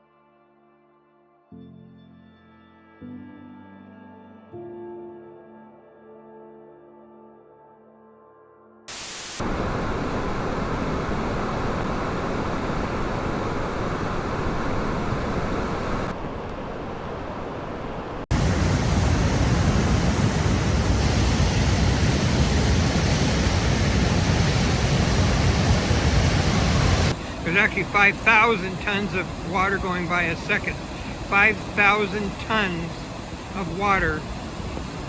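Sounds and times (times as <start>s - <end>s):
floodwater rushing in river: 21.0s - 34.8s.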